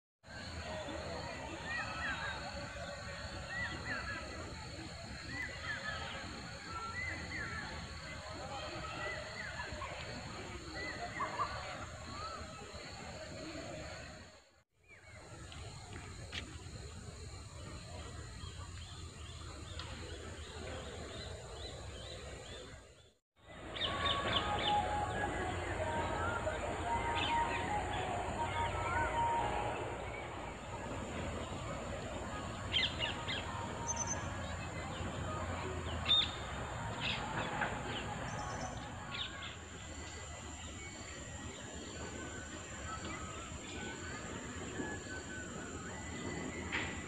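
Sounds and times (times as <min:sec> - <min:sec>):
steady background noise: 0:00.3 - 0:47.0
birds chirping: 0:23.6 - 0:40.0.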